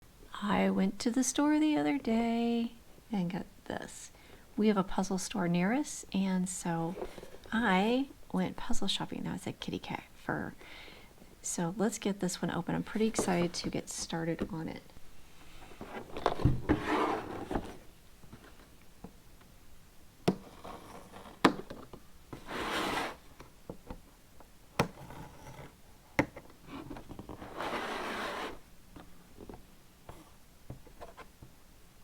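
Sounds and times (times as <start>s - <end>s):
cardboard rubbing and scraping: 6.9s - 7.5s, 13.0s - 13.8s, 15.6s - 18.7s, 20.3s - 23.4s, 24.9s - 25.8s, 26.4s - 31.4s.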